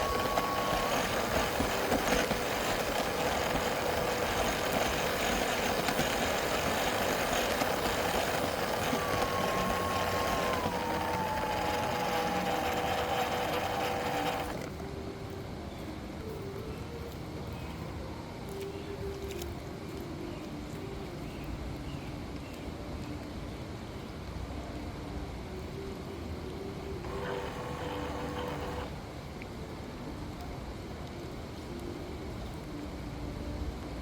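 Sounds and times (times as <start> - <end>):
whine sliding down in pitch: 0.0 - 14.6
motor vehicle whine: 0.0 - 17.3, 25.7 - 29.0.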